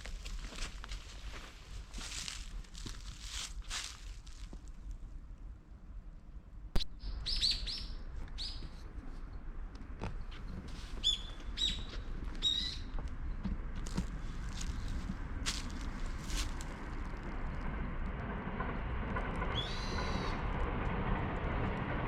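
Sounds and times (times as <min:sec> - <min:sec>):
low outdoor rumble: 0:00.0 - 0:22.0
birds chirping: 0:11.0 - 0:13.0.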